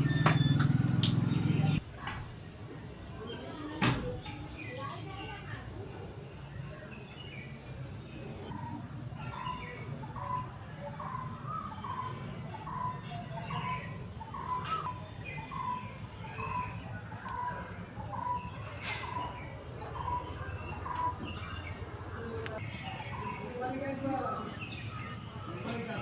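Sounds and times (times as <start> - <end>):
bird call note: 0.0 - 1.8
high-pitched insect chirping: 0.0 - 26.0.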